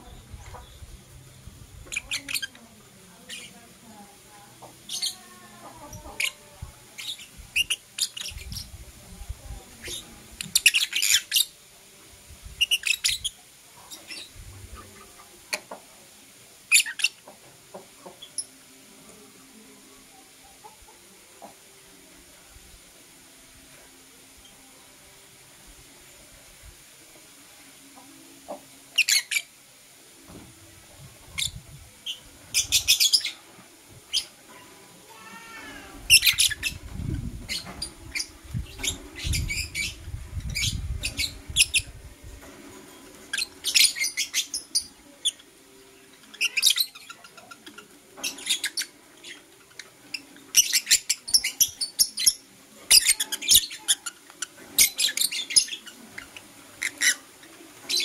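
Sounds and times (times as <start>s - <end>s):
lovebirds chirping: 0.0s - 11.6s, 12.6s - 15.7s, 16.7s - 17.2s, 28.9s - 29.5s, 31.2s - 33.4s, 35.2s - 42.0s, 43.2s - 58.0s.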